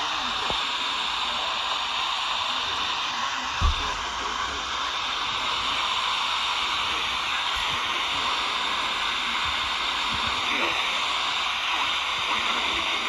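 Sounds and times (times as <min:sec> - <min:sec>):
radio static hiss: 0:00.0 - 0:13.0
low thump: 0:03.6 - 0:04.2.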